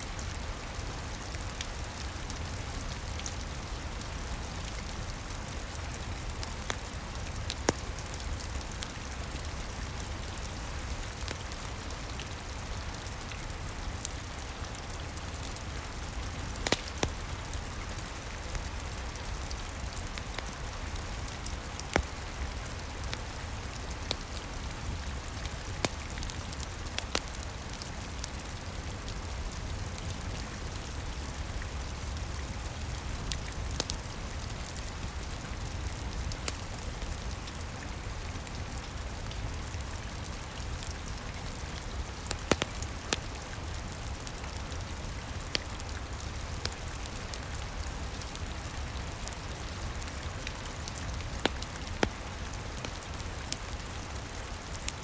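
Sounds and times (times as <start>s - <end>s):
steady rain: 0.0s - 55.0s
wood fire crackling pops: 14.0s - 28.5s, 41.7s - 48.2s, 48.9s - 53.9s.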